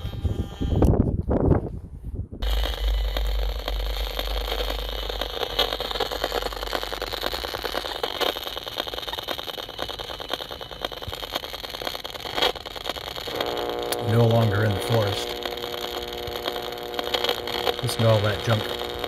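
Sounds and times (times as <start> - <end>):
crackling radio buzz: 0.0 - 1.0, 2.4 - 19.0
low rumble: 1.0 - 9.0.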